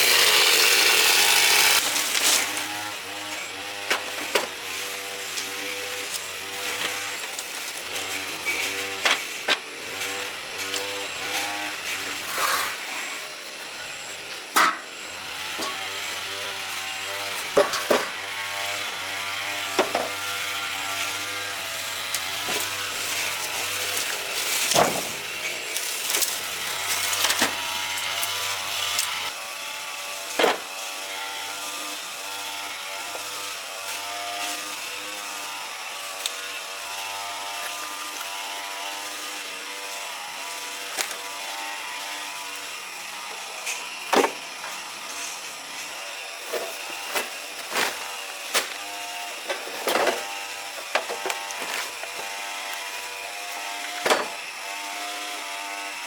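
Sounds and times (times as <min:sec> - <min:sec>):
small motor running: 0:00.0 - 0:03.6.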